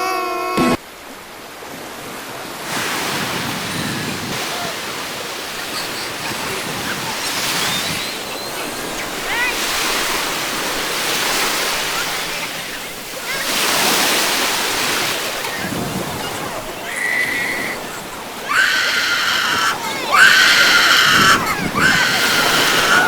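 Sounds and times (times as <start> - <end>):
ocean waves breaking: 0.8 - 23.0
wind buffeting microphone: 2.6 - 9.3, 14.9 - 23.0.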